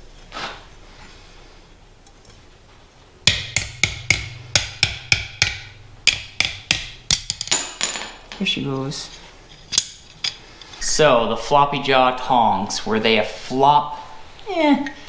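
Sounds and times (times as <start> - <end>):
hammer striking steel: 3.3 - 8.2, 9.7 - 10.8.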